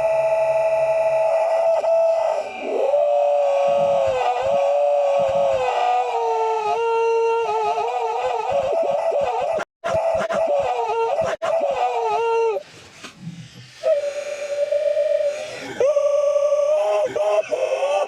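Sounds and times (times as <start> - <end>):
digitally stretched man crying: 1.4 - 12.6, 15.0 - 18.0.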